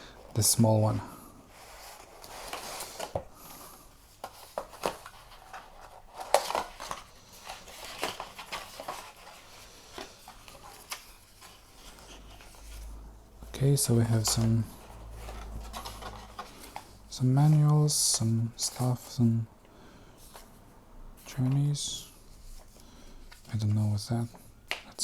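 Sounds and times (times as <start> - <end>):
paper rustling: 0.3 - 19.2.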